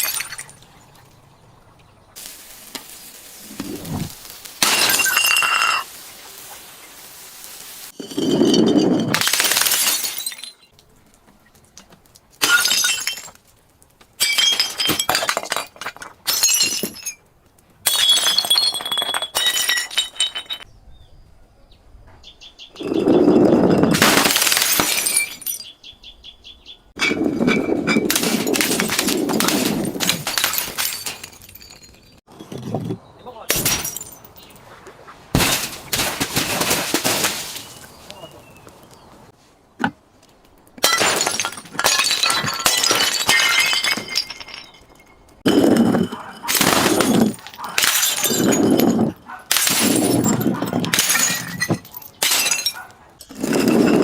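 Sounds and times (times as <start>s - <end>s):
glass bottles shattering: 0.0s - 0.6s, 4.6s - 5.9s, 8.0s - 10.7s, 12.4s - 13.4s, 14.2s - 17.2s, 17.8s - 20.7s, 22.8s - 25.7s, 27.0s - 32.6s, 33.5s - 34.6s, 35.4s - 38.0s, 40.8s - 54.0s
glass shards tinkling: 4.6s - 5.9s, 8.0s - 10.7s, 17.9s - 20.7s, 27.0s - 32.2s, 40.9s - 54.0s.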